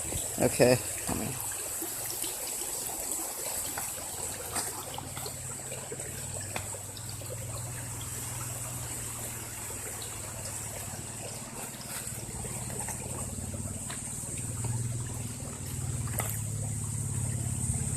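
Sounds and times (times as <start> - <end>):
creek water trickling: 0.0 - 17.9
steady low hum: 5.0 - 17.9.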